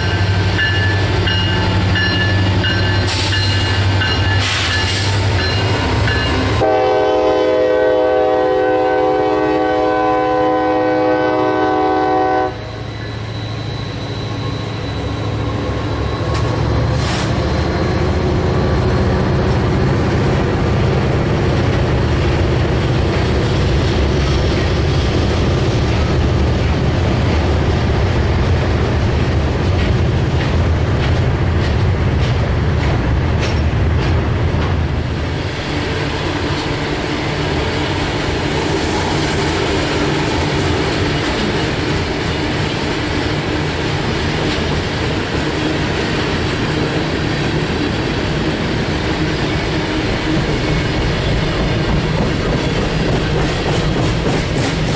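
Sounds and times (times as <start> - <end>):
train rumbling by: 0.0 - 54.9
locomotive air horn blast: 6.5 - 12.8
wheels clacking over rail joints: 50.3 - 54.9.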